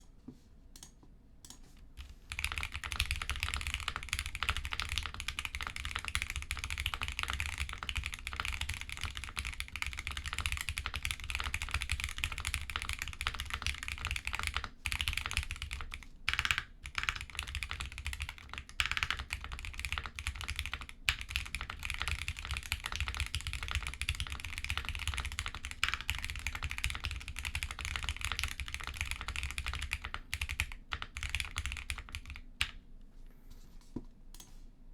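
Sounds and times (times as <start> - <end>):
mechanical keyboard typing: 0.8 - 32.8.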